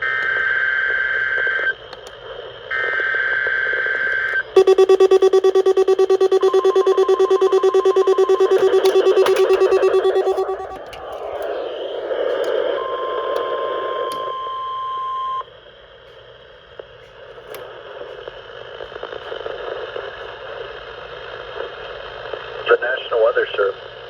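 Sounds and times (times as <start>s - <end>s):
digital alert data burst: 4.6s - 10.8s
weather radio alarm tone: 4.6s - 10.9s.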